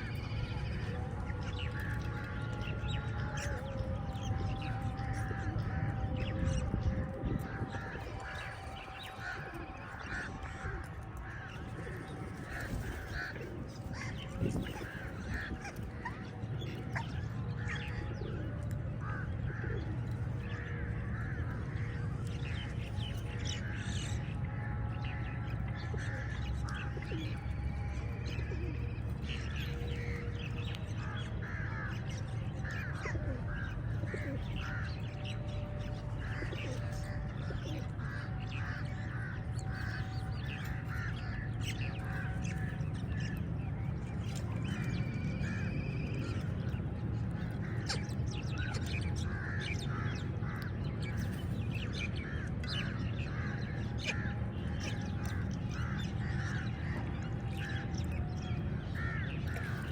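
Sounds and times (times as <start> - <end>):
crows cawing: 7.3 - 16.6, 17.6 - 22.6, 31.0 - 43.3, 47.6 - 51.2, 52.2 - 59.9.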